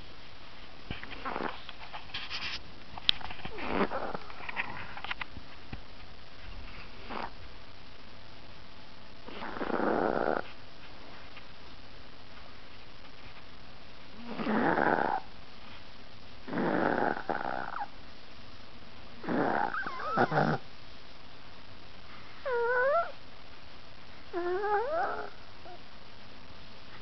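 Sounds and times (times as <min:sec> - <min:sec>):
small dog snoring: 0:01.2 - 0:01.6, 0:03.5 - 0:04.9, 0:07.0 - 0:07.4, 0:09.2 - 0:10.6, 0:14.2 - 0:15.3, 0:16.4 - 0:17.9, 0:19.2 - 0:20.6, 0:22.4 - 0:23.2, 0:24.3 - 0:25.8.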